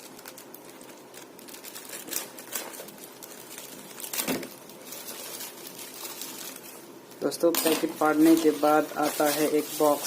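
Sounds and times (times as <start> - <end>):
plastic packet being torn open: 0.0 - 6.8.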